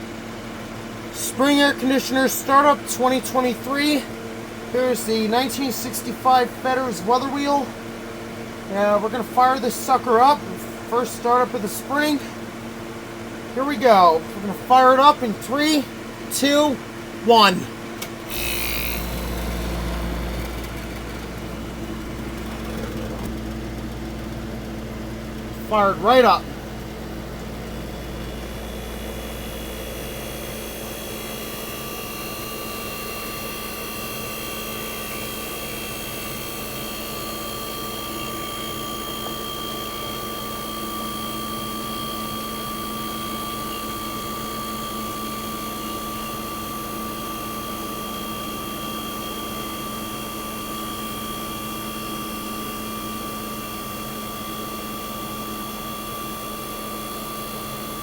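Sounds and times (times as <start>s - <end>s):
air conditioner compressor humming: 0.0s - 58.0s
fan blowing: 1.0s - 58.0s
steady high whine: 13.5s - 58.0s.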